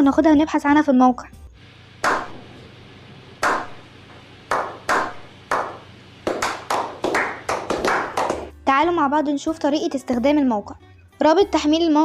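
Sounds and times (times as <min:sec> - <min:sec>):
hand claps with ringing tail: 0:02.0 - 0:02.4, 0:03.4 - 0:03.8, 0:04.5 - 0:08.5.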